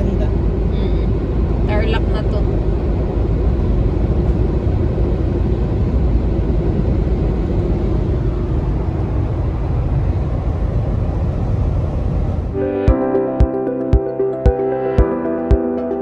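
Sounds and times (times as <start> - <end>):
car interior road rumble: 0.0 - 12.6
faint constant hum: 0.0 - 12.6.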